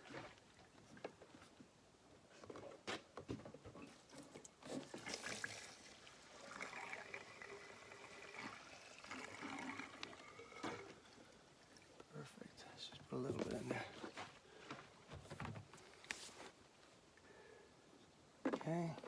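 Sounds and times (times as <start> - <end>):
gasoline trickling into tank: 4.7 - 12.1.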